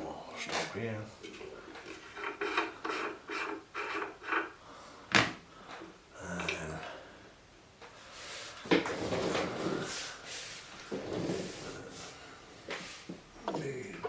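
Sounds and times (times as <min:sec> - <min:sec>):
rhythmic scraping strokes: 0:01.8 - 0:04.6
shuffle of handling: 0:08.1 - 0:14.0.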